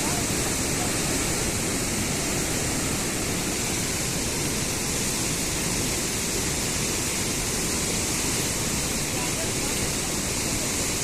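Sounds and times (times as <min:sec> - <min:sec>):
floodwater rushing: 0:00.0 - 0:11.0.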